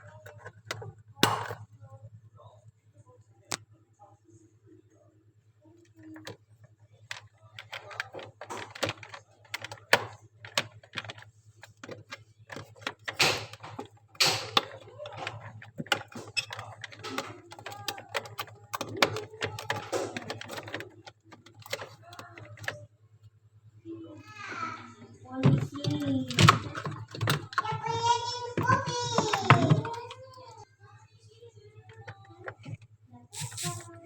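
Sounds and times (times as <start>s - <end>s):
sharp clicks and knocks: 7.1s - 22.8s, 25.4s - 30.6s
background voices: 24.5s - 30.6s.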